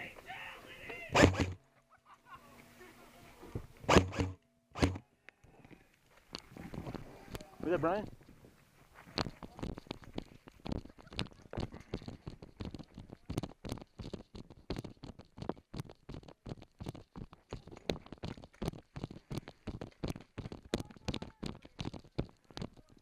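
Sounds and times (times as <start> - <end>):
footsteps: 0.2 - 1.7, 2.6 - 5.0, 5.6 - 23.0.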